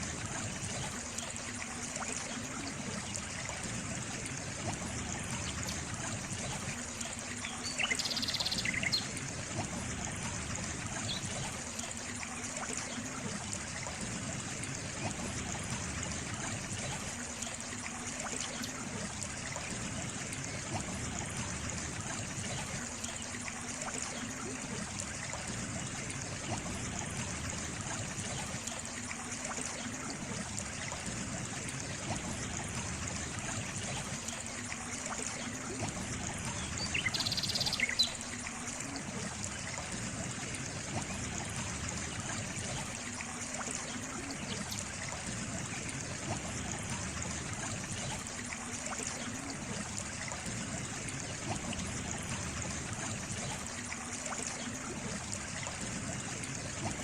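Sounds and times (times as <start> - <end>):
water trickling: 0.0 - 57.0.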